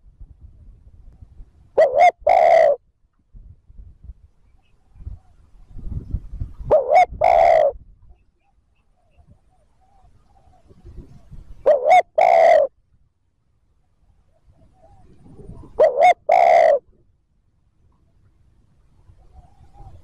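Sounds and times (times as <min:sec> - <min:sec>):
dove cooing: 0:01.8 - 0:02.8, 0:06.6 - 0:07.8, 0:09.2 - 0:12.7, 0:14.5 - 0:16.9, 0:19.2 - 0:20.0.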